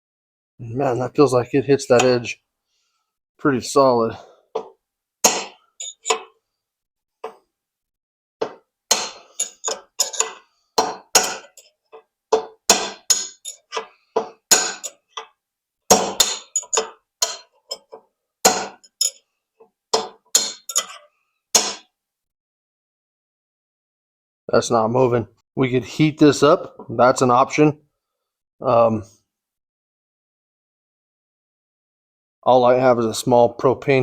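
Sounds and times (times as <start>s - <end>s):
hammer striking metal nail: 5.2s - 6.3s, 8.4s - 11.6s, 12.3s - 15.3s, 15.9s - 17.5s, 18.5s - 19.2s, 20.0s - 21.0s.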